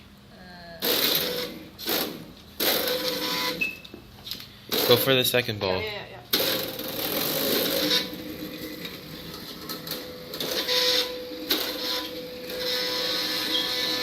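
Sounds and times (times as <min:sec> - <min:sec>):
small electric motors whirring: 0:00.8 - 0:03.6, 0:06.3 - 0:14.0.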